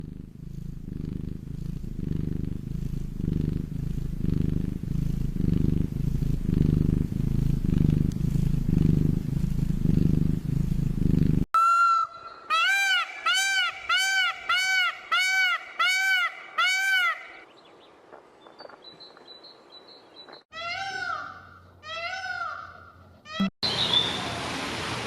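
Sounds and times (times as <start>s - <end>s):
cat purring: 0.0s - 11.5s
animal high call: 11.6s - 17.4s, 20.6s - 24.2s.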